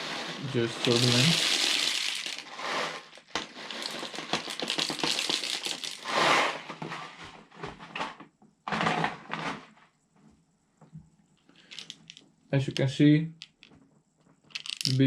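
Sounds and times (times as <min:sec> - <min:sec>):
plastic pellets poured rattling: 0:00.0 - 0:06.7, 0:11.7 - 0:12.2, 0:14.5 - 0:15.0.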